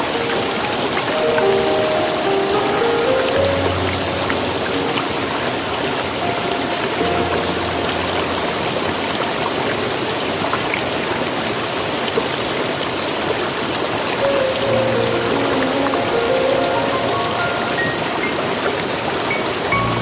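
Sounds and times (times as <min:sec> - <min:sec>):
faint background music: 0:00.0 - 0:09.6
stream water rushing: 0:00.0 - 0:20.0.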